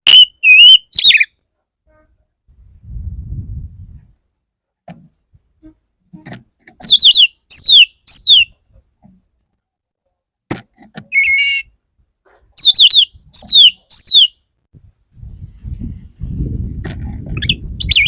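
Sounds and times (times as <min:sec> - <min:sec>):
bird singing whistled phrases: 0:00.1 - 0:01.3, 0:06.8 - 0:08.5, 0:11.1 - 0:11.7, 0:12.6 - 0:14.4, 0:17.4 - 0:18.0.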